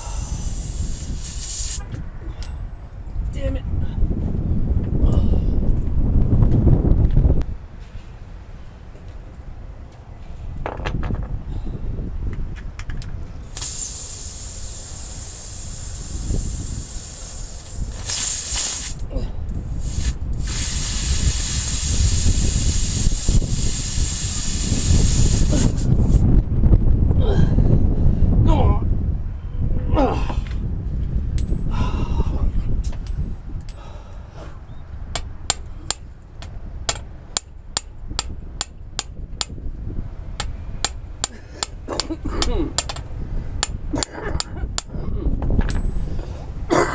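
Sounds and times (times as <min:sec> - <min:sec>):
pressurised air hissing: 0:00.0 - 0:01.9, 0:13.4 - 0:26.2
tool clicks and taps: 0:41.6 - 0:43.0.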